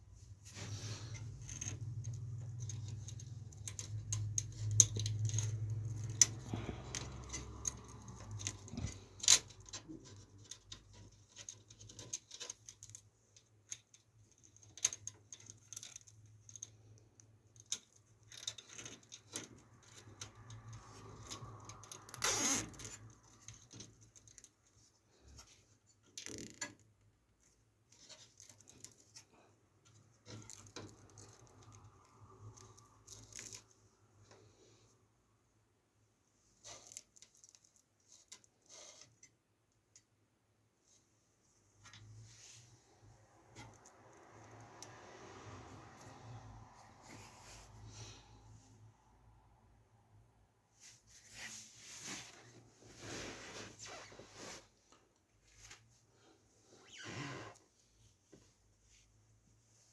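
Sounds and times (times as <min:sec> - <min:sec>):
scrape: 0:00.2 - 0:01.8, 0:38.1 - 0:39.2, 0:42.0 - 0:48.8, 0:50.8 - 0:57.7
cables and plastic connectors rattling: 0:00.3 - 0:34.4.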